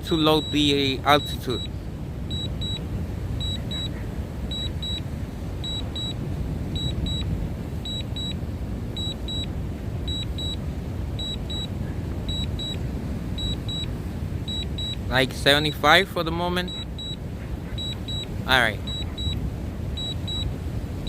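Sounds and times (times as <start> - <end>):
short high warning beeps: 0.0 - 8.4, 9.0 - 9.5, 10.1 - 10.6, 11.2 - 12.8, 13.4 - 13.9, 14.5 - 15.7, 16.4 - 17.2, 17.8 - 19.4, 20.0 - 20.6
wind buffeting microphone: 0.0 - 21.0.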